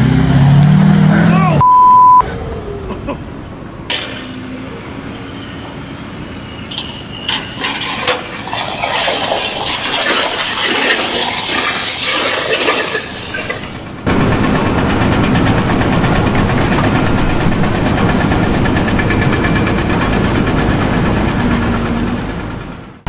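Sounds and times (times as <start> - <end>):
water gushing and splashing: 3.9 - 18.5.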